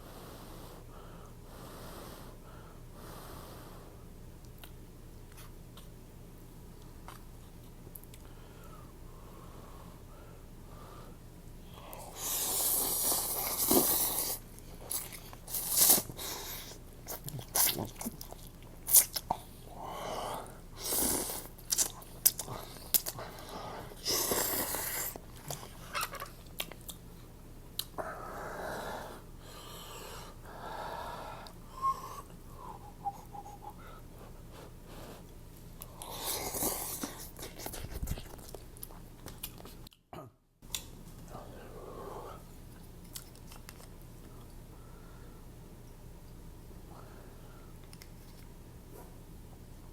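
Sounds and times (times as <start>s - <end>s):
eating noodles mouth sounds: 11.9s - 19.5s, 20.8s - 23.4s
noodles being slurped: 12.2s - 16.5s
chewing and wet mouth clicks: 21.7s - 23.2s, 26.5s - 27.0s, 37.1s - 40.0s, 43.0s - 44.0s.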